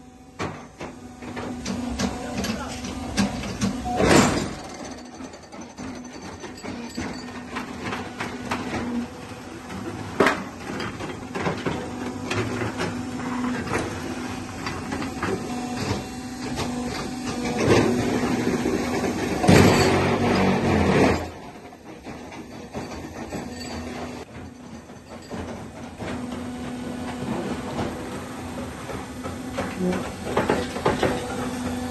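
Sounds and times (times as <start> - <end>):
machinery knocks and clatter: 9.6 - 31.9.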